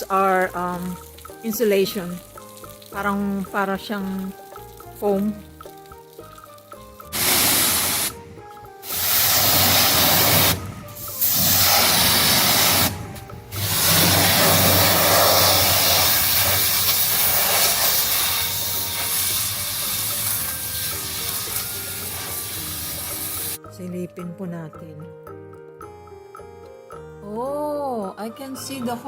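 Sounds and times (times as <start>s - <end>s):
pressure washer spraying water: 7.0s - 23.6s.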